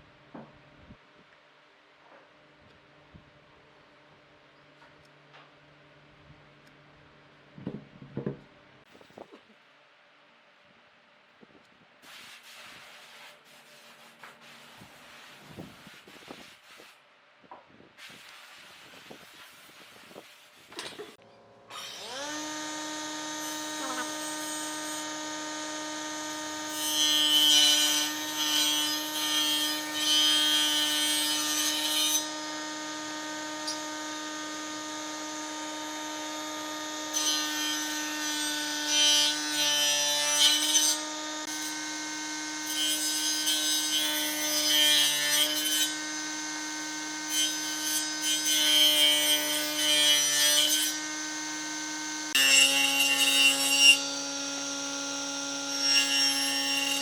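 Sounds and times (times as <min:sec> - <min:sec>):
power tool cutting wood: 0:21.7 - 0:57.0.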